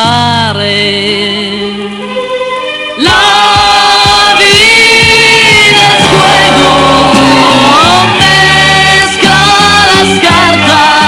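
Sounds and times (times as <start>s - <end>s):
band playing a song with singing: 3.0s - 11.0s.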